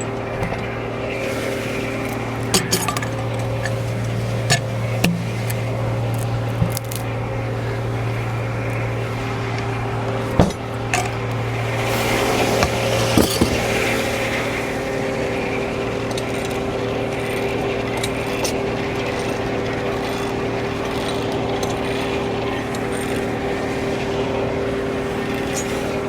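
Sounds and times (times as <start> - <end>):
sharp knocks and clanks: 0.0 - 0.8, 2.4 - 7.1, 10.3 - 14.0
sawmill drone: 0.0 - 26.0.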